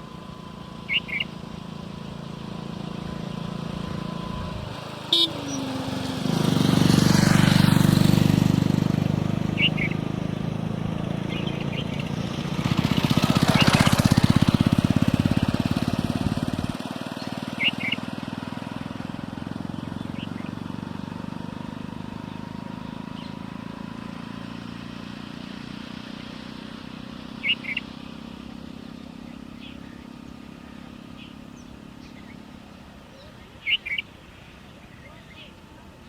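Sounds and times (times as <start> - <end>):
vehicle engine running: 0.0 - 36.0
bird double chirp: 0.8 - 1.4, 9.5 - 10.0, 17.6 - 18.1, 27.4 - 27.9, 33.1 - 34.1.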